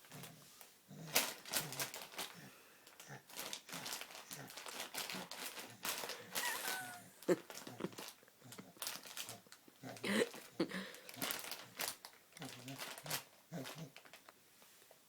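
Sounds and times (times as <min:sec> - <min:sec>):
baby laughing: 0:06.4 - 0:07.9.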